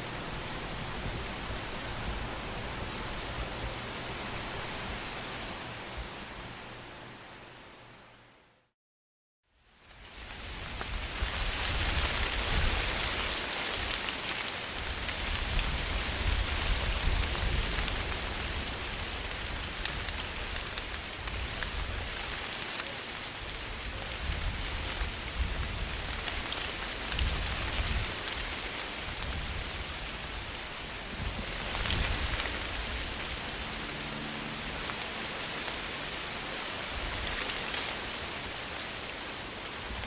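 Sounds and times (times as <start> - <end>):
low rumbling gusts: 0.0 - 6.8, 14.7 - 22.2, 23.4 - 40.0
wind rustling leaves: 0.0 - 8.5, 9.5 - 40.0.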